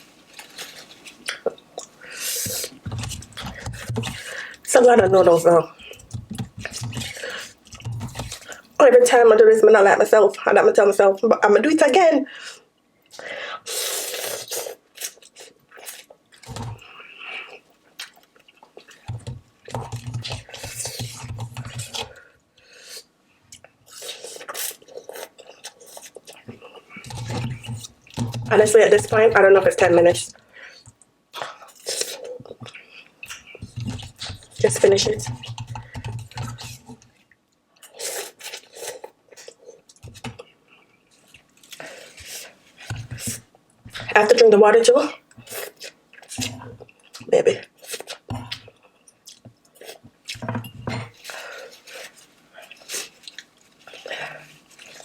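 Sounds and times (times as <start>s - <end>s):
person chewing noodles: 5.8s - 8.8s, 13.0s - 28.4s, 37.8s - 44.1s, 45.2s - 50.4s, 51.0s - 55.0s.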